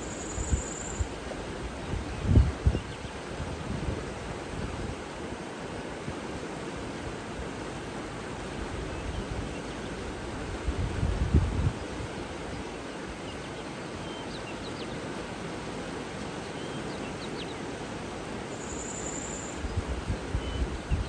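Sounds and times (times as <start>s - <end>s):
faint bird chirps: 0.0s - 1.1s, 18.5s - 21.0s
high bird trill: 0.0s - 1.1s, 18.5s - 19.6s
running water rushing: 0.0s - 21.0s.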